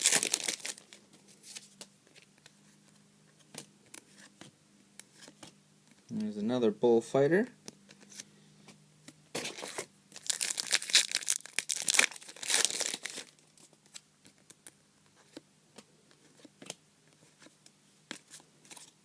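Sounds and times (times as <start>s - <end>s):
wrapper tearing and crinkling: 0.0s - 1.0s, 9.4s - 13.5s.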